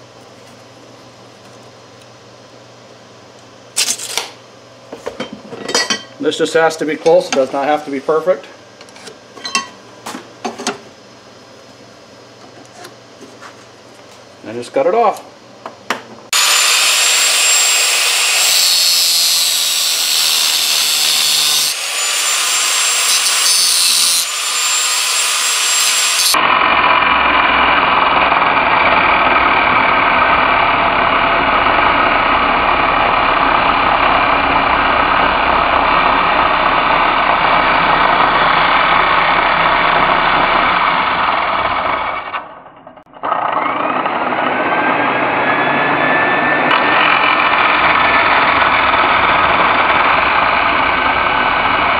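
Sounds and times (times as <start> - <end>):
power tool cutting steel: 16.3 - 31.8, 43.2 - 51.9.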